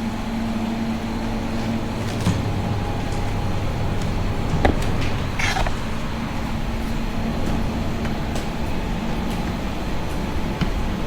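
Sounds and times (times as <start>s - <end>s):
steady mechanical hum: 0.0s - 11.0s
sharp knocks: 4.6s - 5.9s
short squeak: 4.6s - 6.0s.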